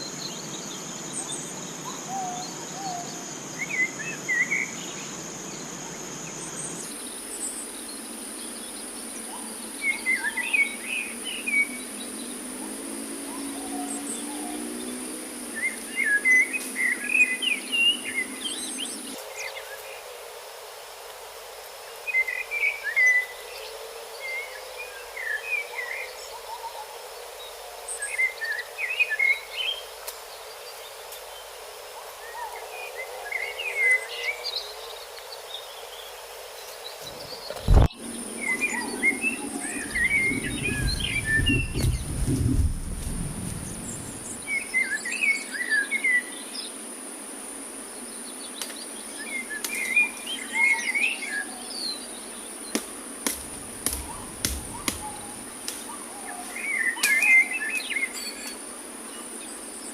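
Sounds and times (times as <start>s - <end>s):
forest background noise: 0.0s - 59.9s
high insect whine: 0.0s - 59.9s
bird chirping: 37.0s - 46.4s, 49.1s - 58.6s.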